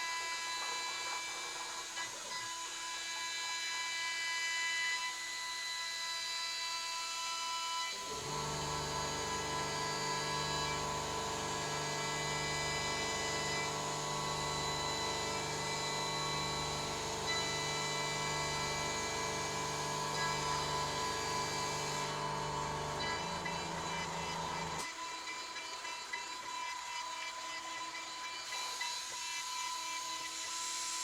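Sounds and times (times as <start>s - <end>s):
machine spindle whining: 7.9s - 31.0s.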